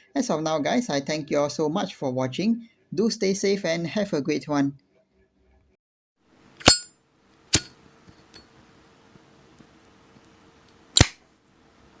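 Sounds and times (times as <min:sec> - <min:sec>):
lighter clicks: 0:11.0 - 0:11.2.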